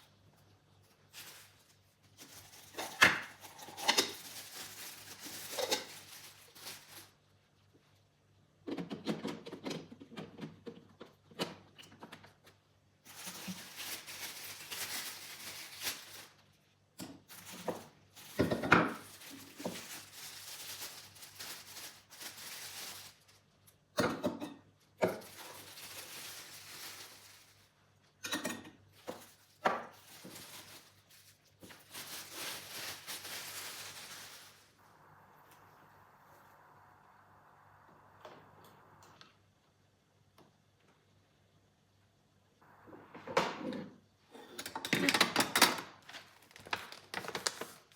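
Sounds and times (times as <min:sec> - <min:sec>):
rubbing or rustling noise: 0:00.8 - 0:07.2, 0:29.0 - 0:35.2
dishes and utensils clattering: 0:28.2 - 0:29.2.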